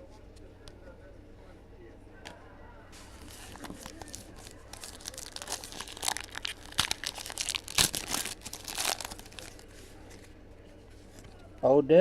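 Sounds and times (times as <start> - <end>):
foil wrapper crinkling and tearing: 3.0 - 9.8.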